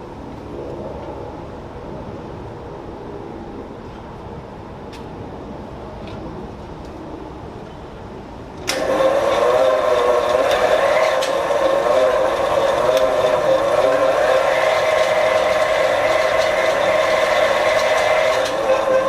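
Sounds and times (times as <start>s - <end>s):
lathe motor whine: 8.7s - 19.0s.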